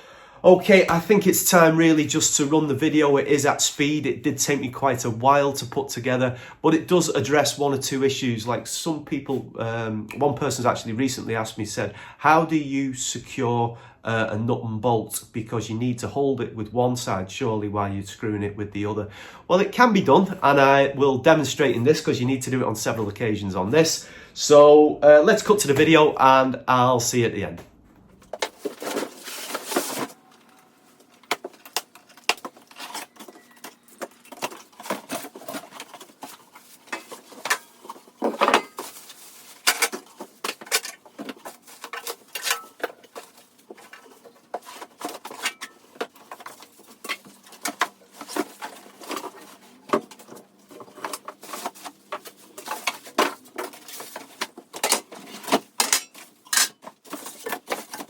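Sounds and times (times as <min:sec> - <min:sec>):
clicks knocks and rattles of parts: 0:29.8 - 0:39.0, 0:39.6 - 0:58.0.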